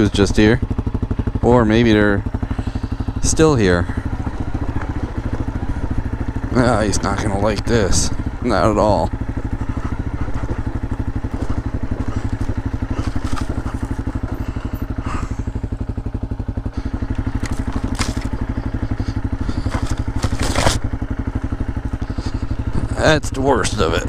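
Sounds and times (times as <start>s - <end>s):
dirt bike engine running: 0.0s - 24.0s
tyres scraping on rocks: 19.5s - 20.9s.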